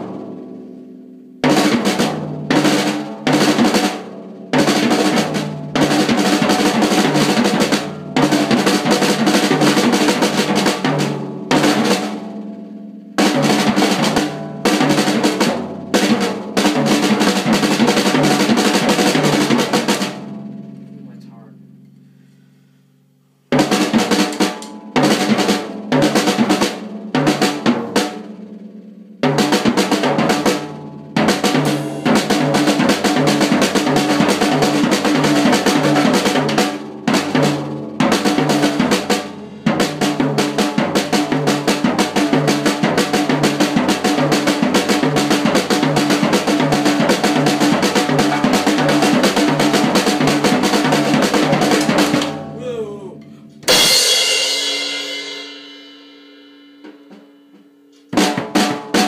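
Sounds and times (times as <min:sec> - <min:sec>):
snare drum strokes: 0:23.5 - 0:26.8, 0:29.5 - 0:53.0
bass drum: 0:29.2 - 0:54.2.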